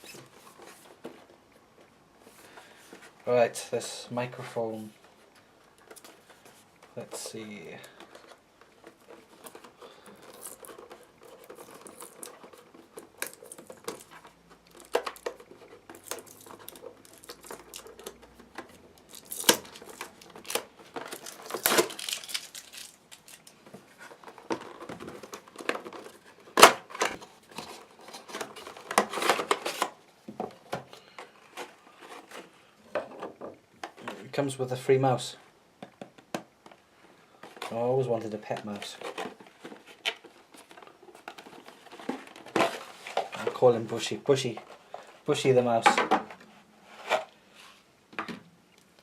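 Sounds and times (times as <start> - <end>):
packaging crinkling and tearing: 7.8 - 30.0.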